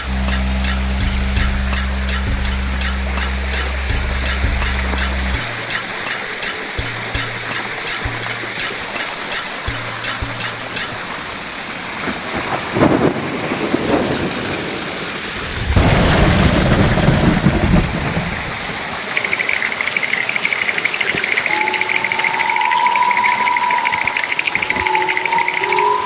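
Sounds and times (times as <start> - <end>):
steady tone: 0.0 - 6.1, 19.2 - 26.0
fast pulsing chirring: 0.0 - 11.2, 19.0 - 26.0
steady rain: 0.0 - 26.0
thunder rumbling: 11.9 - 26.0.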